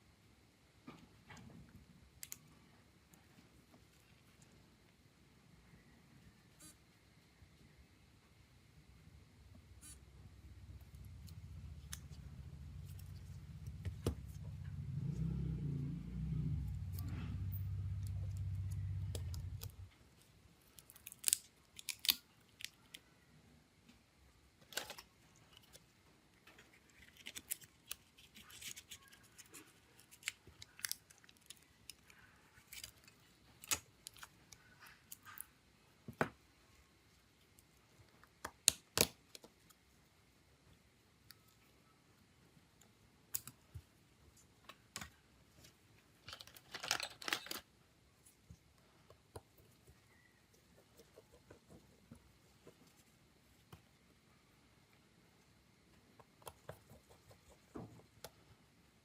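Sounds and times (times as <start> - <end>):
low hum: 7.3 - 20.2.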